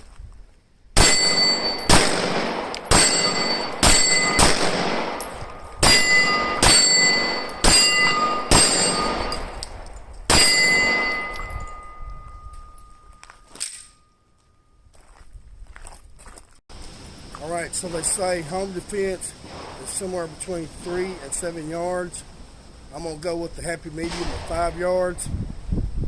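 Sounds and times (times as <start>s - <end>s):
metallic ringing: 1.0s - 2.0s, 2.9s - 4.5s, 5.1s - 9.6s, 10.3s - 14.8s
pistol shots: 1.0s - 11.5s.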